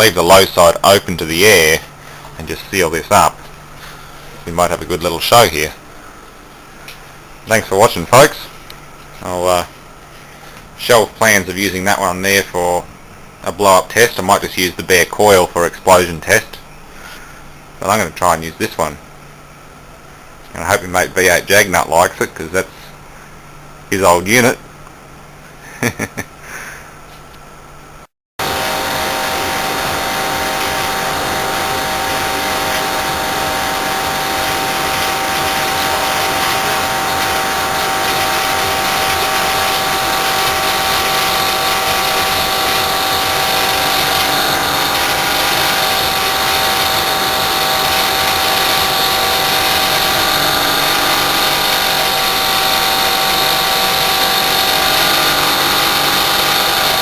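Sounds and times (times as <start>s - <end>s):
compressor whining and rattling: 0.0s - 5.8s, 28.4s - 57.0s.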